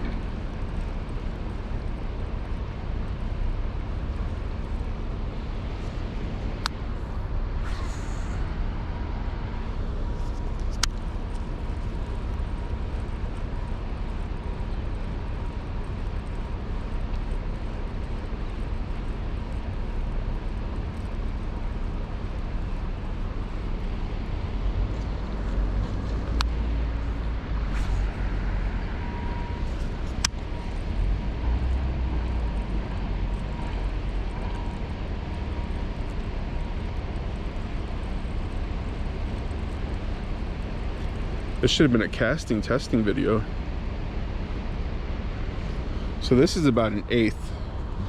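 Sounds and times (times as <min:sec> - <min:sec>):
deep rumble: 0:00.0 - 0:41.9
outdoor rushing noise: 0:03.8 - 0:13.8, 0:22.6 - 0:35.8.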